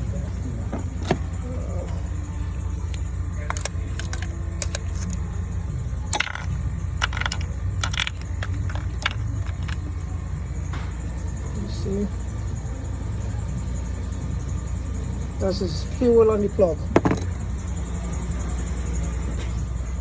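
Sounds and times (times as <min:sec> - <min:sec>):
metallic clinks of tools: 0:02.8 - 0:05.2, 0:06.1 - 0:09.8, 0:17.0 - 0:17.4.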